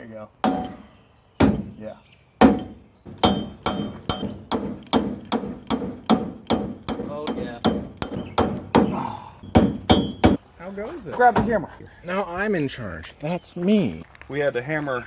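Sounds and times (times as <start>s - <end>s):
rubber mallet striking steel: 0.4s - 1.8s, 2.4s - 10.4s.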